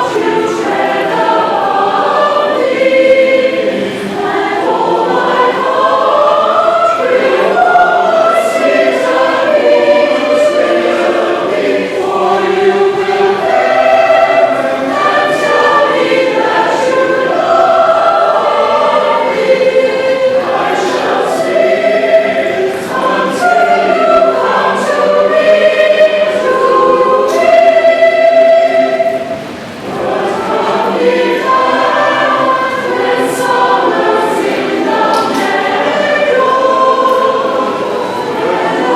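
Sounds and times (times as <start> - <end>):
choir singing: 0.0 - 38.9.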